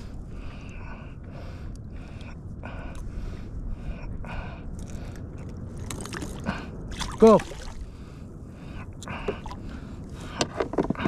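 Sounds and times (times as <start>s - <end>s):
person breathing hard: 0.0s - 5.3s, 7.8s - 11.0s
water rumbling: 0.0s - 11.0s
wind: 0.0s - 11.0s.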